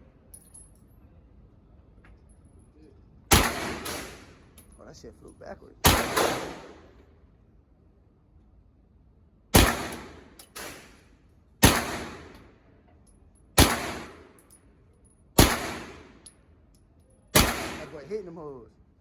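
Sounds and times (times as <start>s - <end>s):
gunshots with echo: 5.8s - 6.9s, 15.4s - 16.1s, 17.4s - 18.1s.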